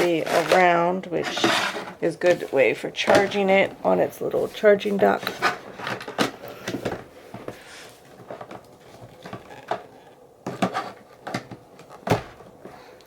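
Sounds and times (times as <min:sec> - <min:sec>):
plastic clicks and knocks: 0:08.4 - 0:12.3.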